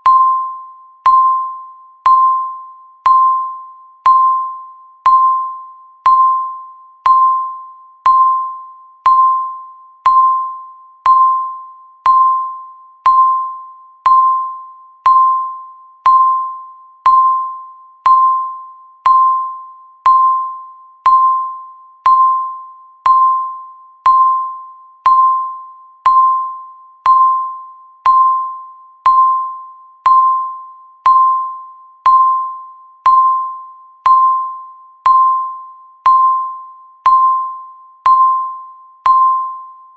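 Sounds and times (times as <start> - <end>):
timer chime beeps: 0.0 - 39.9.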